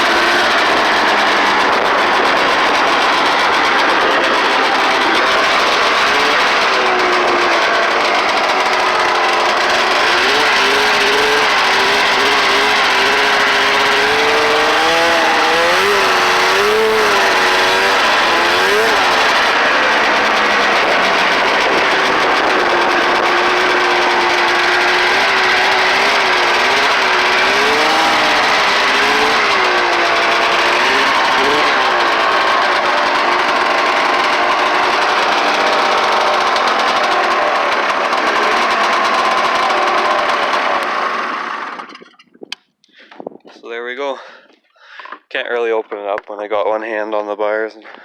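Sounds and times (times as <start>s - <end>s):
snowmobile engine revving: 0.0s - 42.2s.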